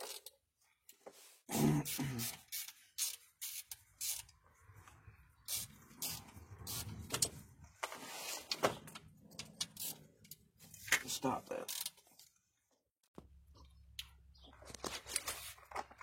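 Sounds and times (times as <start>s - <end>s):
person grunting: 1.5s - 2.4s.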